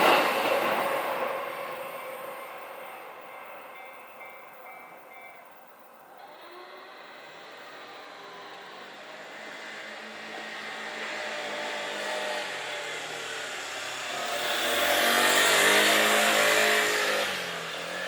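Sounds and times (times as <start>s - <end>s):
car driving past: 7.5s - 18.0s.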